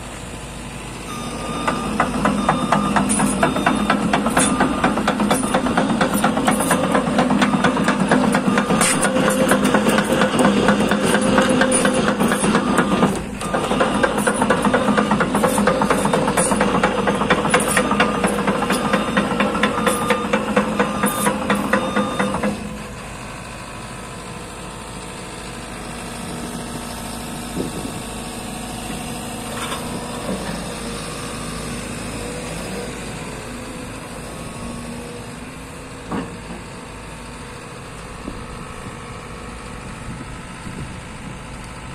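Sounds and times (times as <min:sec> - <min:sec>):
excavator diesel engine running: 0:00.0 - 0:41.9
loud rhythmic clatter: 0:02.0 - 0:22.6.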